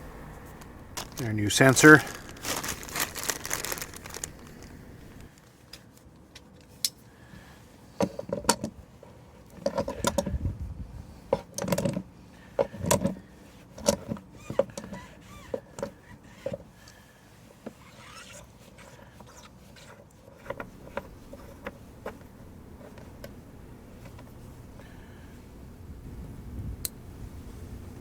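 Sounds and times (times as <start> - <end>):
rustle: 0.0 - 28.0
small parts knocking and clattering: 1.0 - 5.3.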